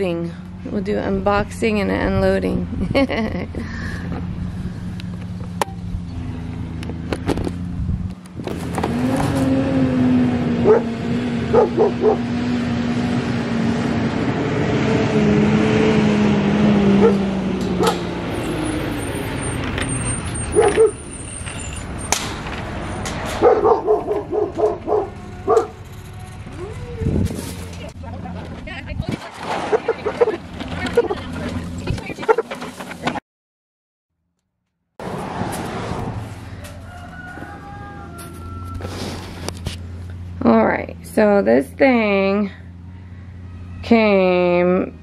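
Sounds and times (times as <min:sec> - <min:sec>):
truck engine running: 0:00.0 - 0:33.2, 0:35.5 - 0:45.0
dog barking: 0:10.6 - 0:10.9, 0:11.5 - 0:12.2, 0:17.0 - 0:17.2, 0:20.5 - 0:21.0, 0:23.4 - 0:25.8, 0:29.7 - 0:30.4.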